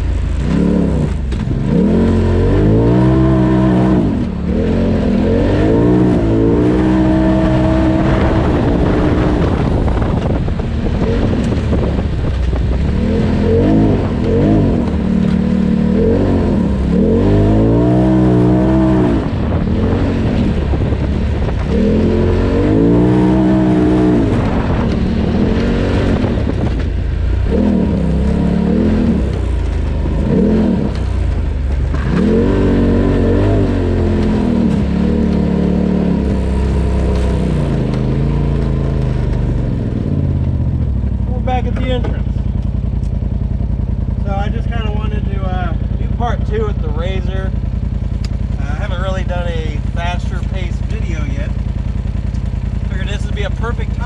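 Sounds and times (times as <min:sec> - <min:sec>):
engine revving hard: 0:00.0 - 0:12.1, 0:12.7 - 0:40.5.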